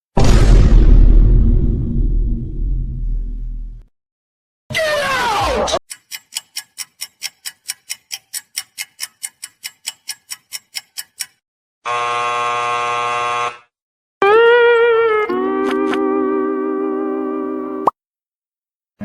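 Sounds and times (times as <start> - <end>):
flat buzzer: 11.8 - 13.7.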